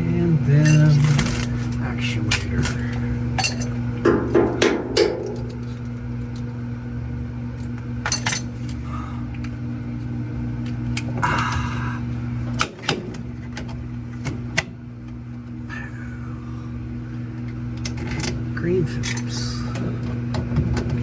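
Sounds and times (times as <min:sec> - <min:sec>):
steady low hum: 0:00.0 - 0:21.0
metal parts clinking: 0:00.6 - 0:03.8.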